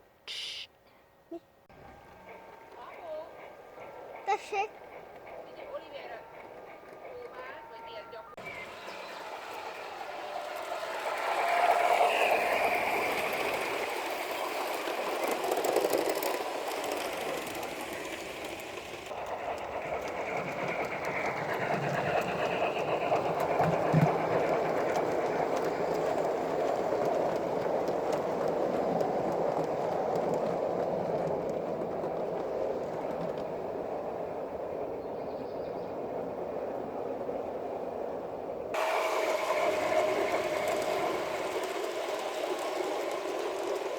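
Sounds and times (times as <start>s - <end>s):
wheels rolling on rails: 1.7s - 43.9s
model train motor running: 8.4s - 33.4s, 38.8s - 43.9s.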